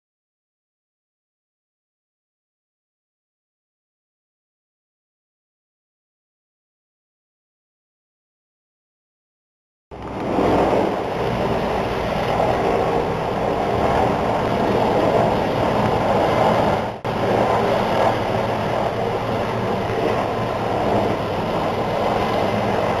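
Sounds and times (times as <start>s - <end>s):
helicopter flying overhead: 9.9s - 23.0s.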